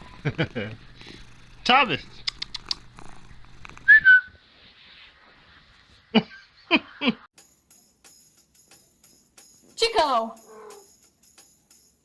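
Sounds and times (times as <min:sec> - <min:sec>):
cat purring hum: 0:00.0 - 0:04.0
cat calling: 0:10.5 - 0:10.9.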